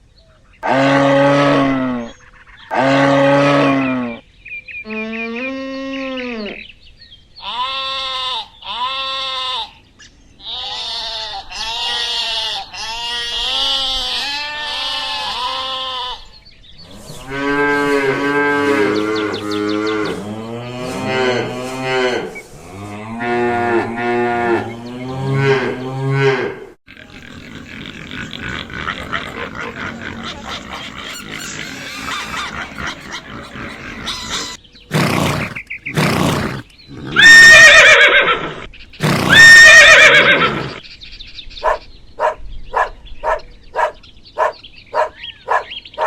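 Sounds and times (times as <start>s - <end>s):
livestock calling: 7.4s - 40.8s.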